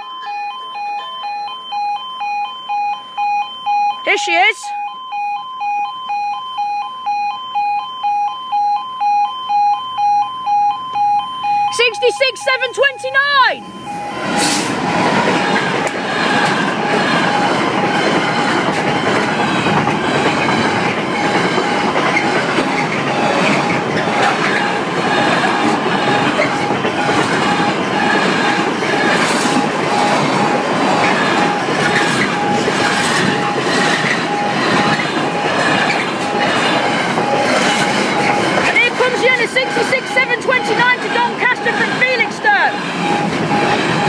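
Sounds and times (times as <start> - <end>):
level-crossing alarm tone: 0.0 - 44.0
wheel squeal: 13.7 - 42.2
train wheels clattering: 14.2 - 44.0.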